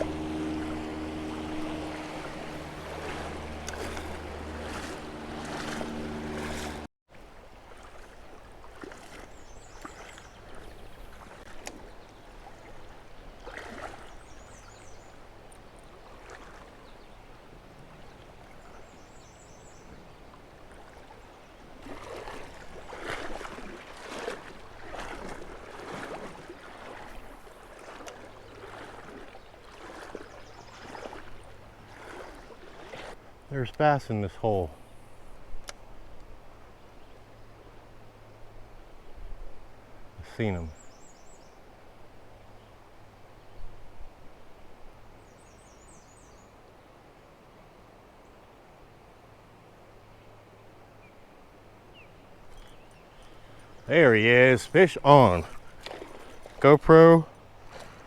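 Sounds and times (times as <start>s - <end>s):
shallow river water splashing: 0.0s - 58.0s.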